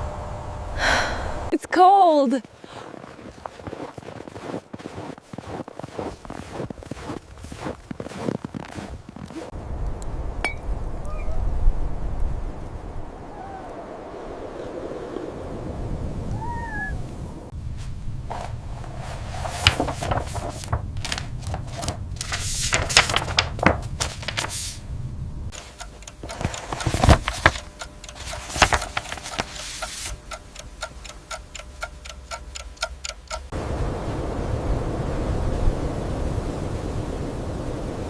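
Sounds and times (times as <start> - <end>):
irregular sharp clicks and knocks: 25.5 - 33.5
quick even ticking: 25.5 - 33.5.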